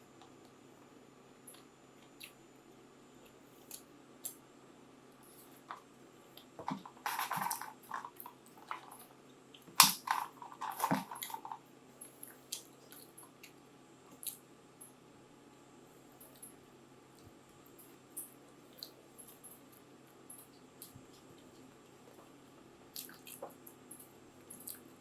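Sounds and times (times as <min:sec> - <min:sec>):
mouth clicks and smacks: 0:02.2 - 0:02.4, 0:23.0 - 0:23.6.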